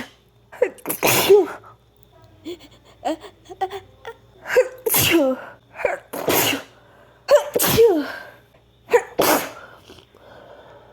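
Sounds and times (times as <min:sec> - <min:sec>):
woman sneezing: 0:00.0 - 0:01.7, 0:04.4 - 0:08.3, 0:08.9 - 0:09.9.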